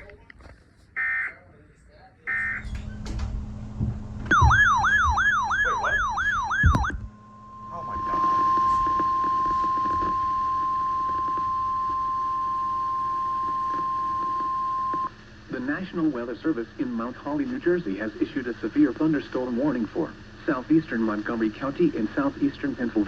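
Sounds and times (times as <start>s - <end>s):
steady alert tone: 4.3s - 8.8s
yelping siren tone: 4.3s - 12.8s.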